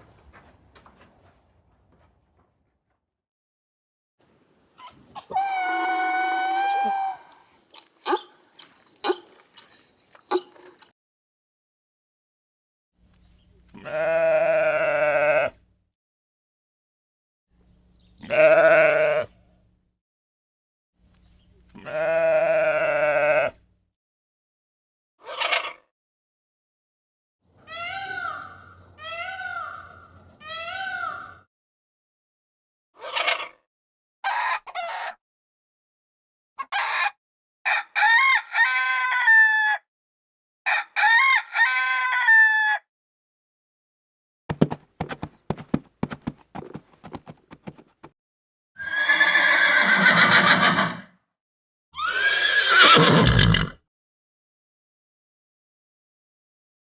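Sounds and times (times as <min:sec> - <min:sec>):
farm animal bleating: 0:13.7 - 0:15.6, 0:18.2 - 0:19.4, 0:21.7 - 0:23.6, 0:27.7 - 0:31.4
rooster crowing: 0:37.7 - 0:39.8, 0:40.7 - 0:42.8.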